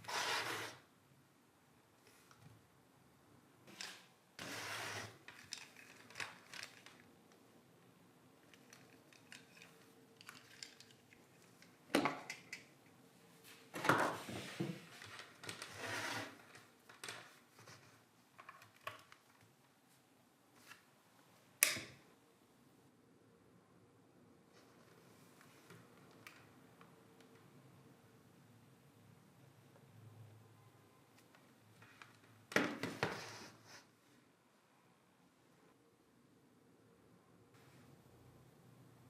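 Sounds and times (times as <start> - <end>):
small objects being handled: 3.7 - 7.5, 8.4 - 12.7.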